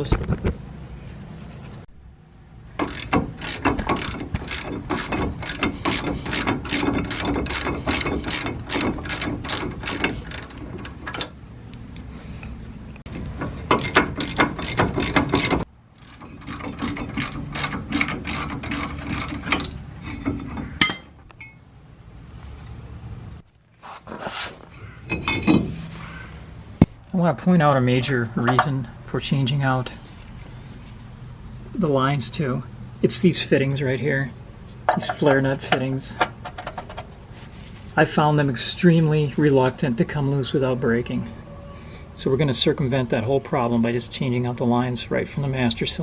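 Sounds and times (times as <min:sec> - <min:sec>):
socket ratchet clicking: 0:02.8 - 0:11.4
sharp metallic clink: 0:20.8 - 0:21.6.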